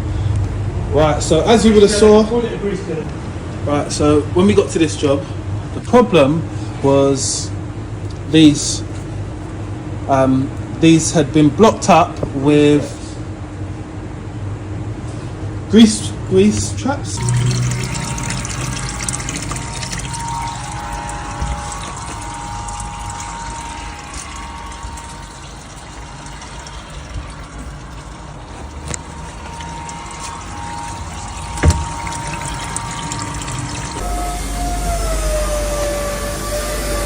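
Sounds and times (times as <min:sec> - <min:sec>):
mechanical whine: 0:17.1 - 0:37.0
water running: 0:17.2 - 0:37.0.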